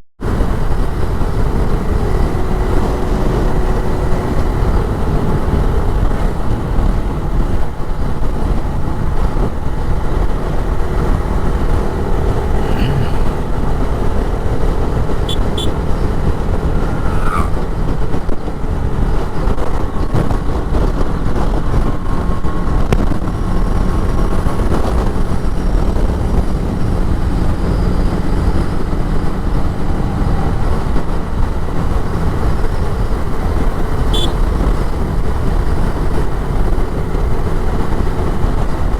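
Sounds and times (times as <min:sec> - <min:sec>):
road noise: 0:00.0 - 0:38.9
motorcycle engine running: 0:00.2 - 0:38.9
wind rush: 0:00.2 - 0:38.9
faint short traffic tones: 0:15.2 - 0:16.1, 0:34.0 - 0:34.5.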